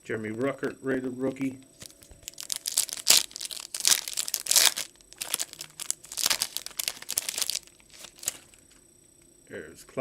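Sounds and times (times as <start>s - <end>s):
wrapper being torn and crinkled: 1.8s - 8.5s.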